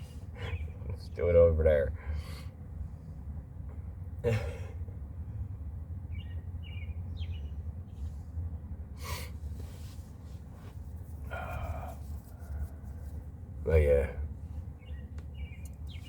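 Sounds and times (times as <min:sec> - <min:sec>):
bird chirps: 0:06.1 - 0:07.6, 0:14.8 - 0:16.0.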